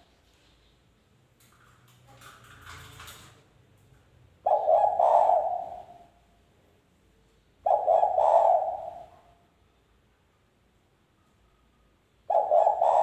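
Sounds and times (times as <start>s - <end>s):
dove cooing: 4.4s - 6.2s, 7.6s - 9.3s, 12.3s - 13.0s.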